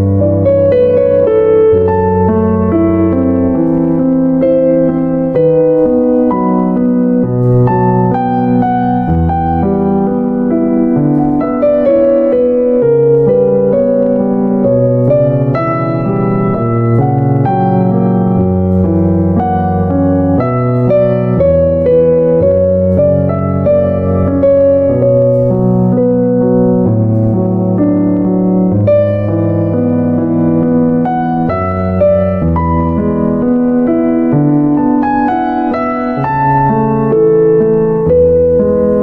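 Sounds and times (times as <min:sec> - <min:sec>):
piano-like keyboard melody: 0:00.0 - 0:39.0.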